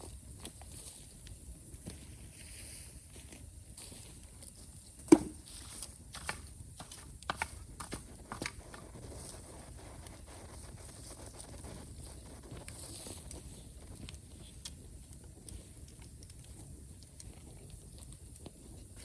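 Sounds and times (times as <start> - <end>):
bamboo fire crackling: 0.0 - 19.0.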